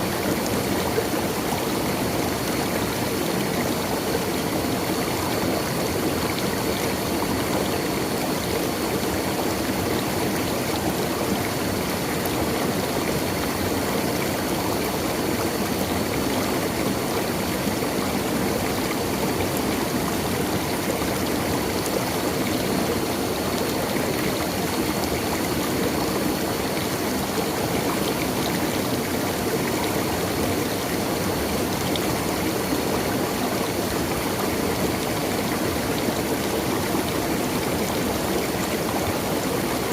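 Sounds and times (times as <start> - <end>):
stream water rushing over rocks: 0.0 - 39.9.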